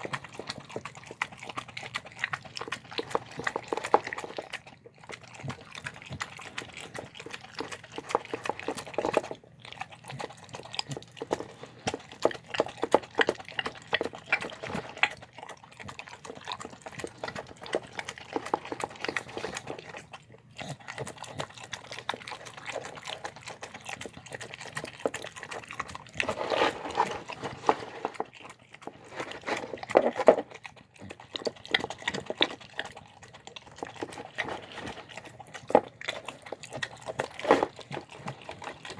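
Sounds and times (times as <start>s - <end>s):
dog chewing wet food: 0.0s - 38.9s.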